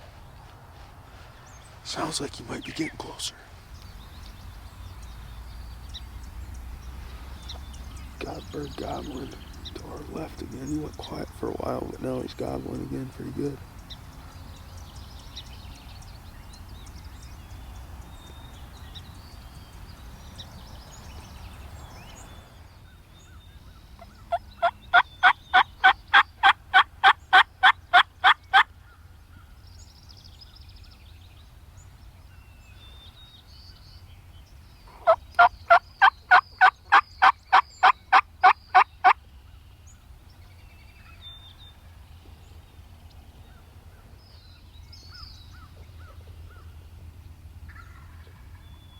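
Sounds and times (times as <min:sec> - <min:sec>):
wild turkey yelps: 0:24.0 - 0:28.7, 0:34.9 - 0:39.2, 0:47.7 - 0:48.7.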